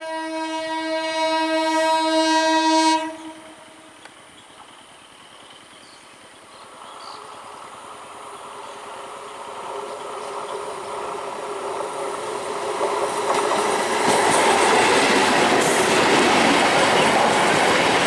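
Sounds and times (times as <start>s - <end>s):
train horn blast: 0.0s - 4.0s
train rumble: 3.0s - 18.0s.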